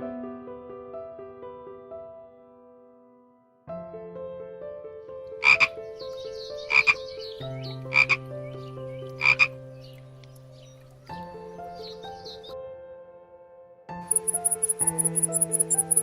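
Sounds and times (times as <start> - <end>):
soft piano music: 0.0 - 16.0
frog croaking: 5.4 - 5.8, 6.6 - 9.7, 14.1 - 16.0.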